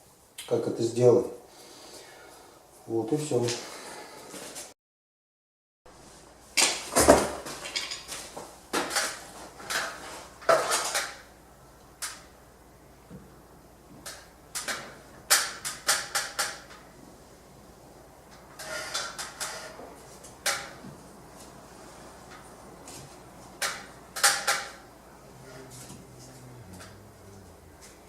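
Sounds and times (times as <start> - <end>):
hard tiles clinking and knocking: 6.6 - 8.2.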